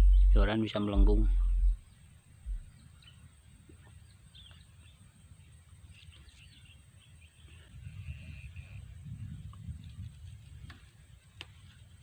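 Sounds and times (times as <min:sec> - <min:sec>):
steady high-pitched note: 0:00.0 - 0:01.8
wind rumble on microphone: 0:00.0 - 0:04.2, 0:06.2 - 0:12.0.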